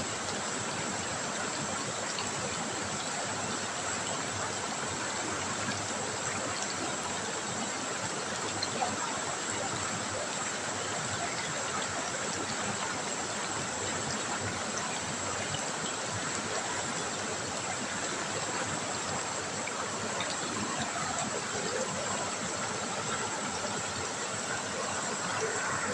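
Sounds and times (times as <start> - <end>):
river water flowing: 0.0 - 25.9.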